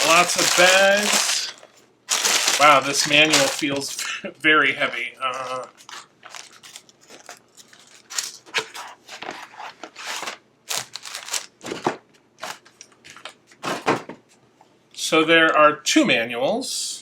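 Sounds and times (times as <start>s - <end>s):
plastic bags crinkling: 0.0s - 4.2s, 5.4s - 9.3s, 9.9s - 12.8s.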